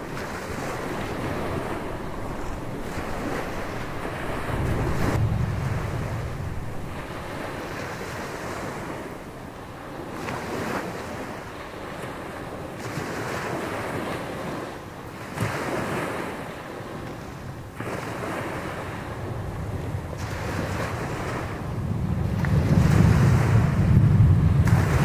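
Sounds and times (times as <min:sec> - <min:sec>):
waves breaking on beach: 0:00.0 - 0:25.0
wind buffeting microphone: 0:00.0 - 0:25.0.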